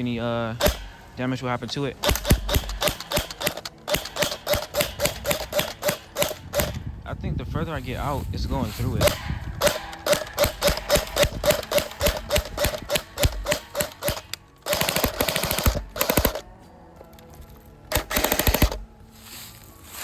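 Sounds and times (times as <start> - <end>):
airsoft gun full-auto bursts: 0.6 - 1.2, 2.0 - 6.8, 9.0 - 16.4, 17.9 - 18.9
airsoft gun single shots: 0.6 - 1.2, 2.0 - 6.8, 8.9 - 16.4.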